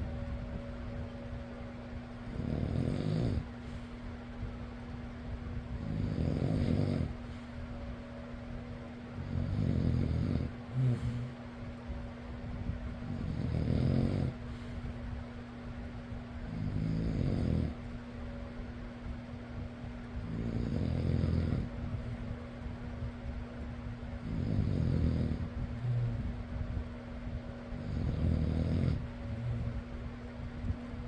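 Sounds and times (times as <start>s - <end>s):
electric fan humming: 0.0s - 31.0s
person snoring: 2.3s - 3.5s, 5.8s - 7.1s, 9.3s - 11.4s, 13.1s - 14.4s, 16.5s - 17.8s, 20.3s - 21.7s, 27.8s - 29.7s.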